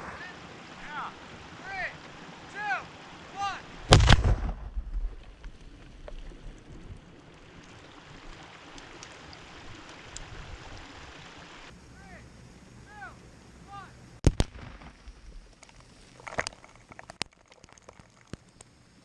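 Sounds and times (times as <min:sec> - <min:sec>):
low rumble: 0:00.0 - 0:01.2, 0:03.8 - 0:07.3
explosive blast: 0:03.9 - 0:05.3.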